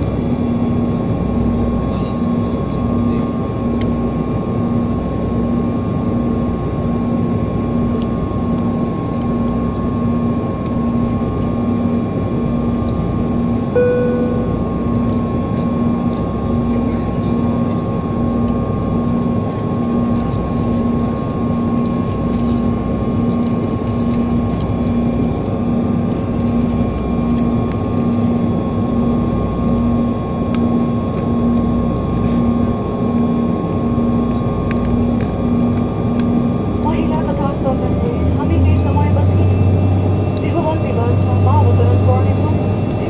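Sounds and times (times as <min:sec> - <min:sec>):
airliner engine drone: 0:00.0 - 0:43.0
low throbbing hum: 0:08.5 - 0:17.4, 0:20.9 - 0:43.0.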